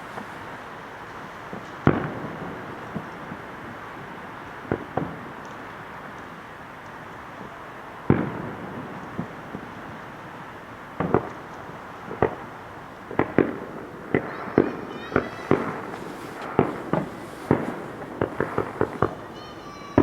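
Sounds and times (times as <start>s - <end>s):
firework shells bursting: 0.0s - 3.4s, 11.0s - 20.0s.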